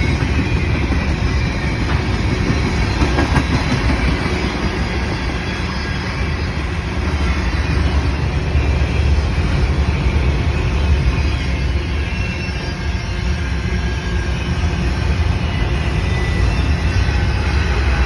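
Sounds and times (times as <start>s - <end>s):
freight train rumbling on rails: 0.0s - 18.0s.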